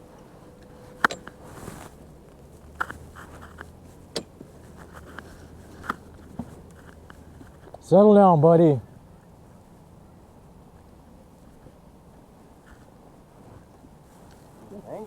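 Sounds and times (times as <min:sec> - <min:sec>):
low steady hum: 0:00.0 - 0:15.0.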